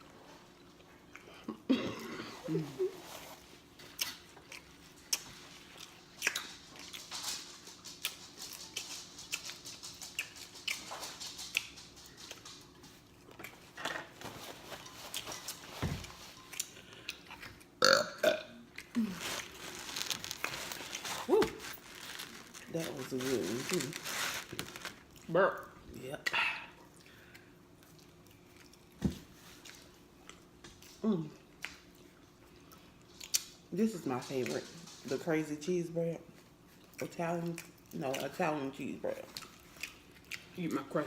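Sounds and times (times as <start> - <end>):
open-mouthed chewing: 2.4 - 13.8, 14.8 - 23.6, 39.1 - 40.6
person burping: 17.8 - 19.1.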